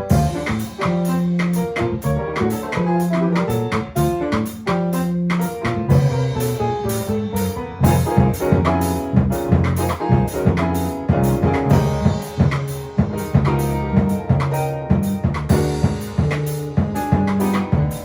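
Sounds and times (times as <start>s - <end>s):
drum kit groove: 0.0s - 18.0s
low bass notes and chords: 0.0s - 18.0s.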